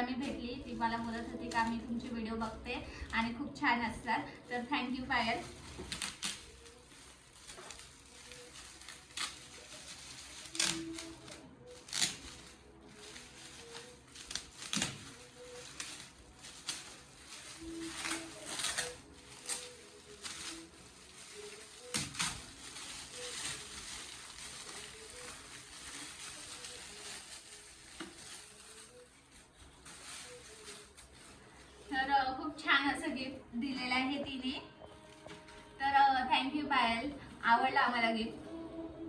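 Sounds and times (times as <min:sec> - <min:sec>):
wrapping paper rustling and crinkling: 0:00.0 - 0:33.0.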